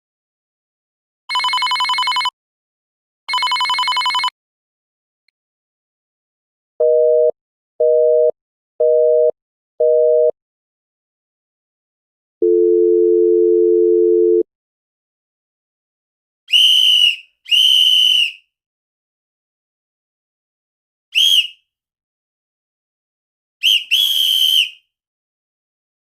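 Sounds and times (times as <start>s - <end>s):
telephone dial tone: 1.3s - 2.3s, 3.3s - 4.3s, 6.8s - 10.3s, 12.4s - 14.4s
shrill whistle blown: 16.5s - 18.5s, 21.2s - 21.6s, 23.6s - 24.9s.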